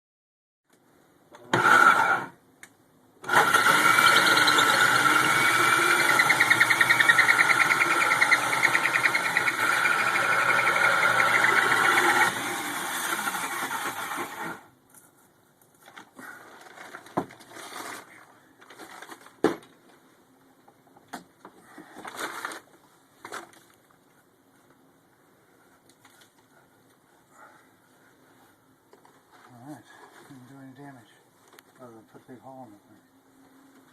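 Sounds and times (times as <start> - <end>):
power drill cutting wood: 1.5 - 2.3, 3.2 - 14.7.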